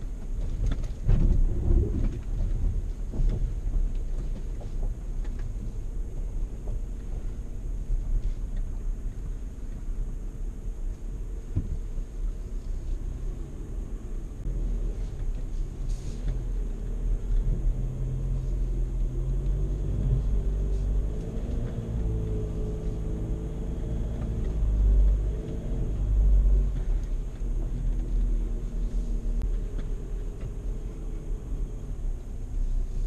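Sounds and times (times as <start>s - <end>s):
diesel engine rumbling: 0.0s - 33.0s.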